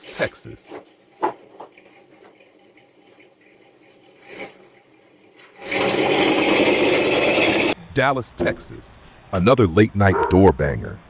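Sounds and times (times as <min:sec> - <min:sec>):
faint background hiss: 0:00.0 - 0:00.7, 0:07.8 - 0:11.0.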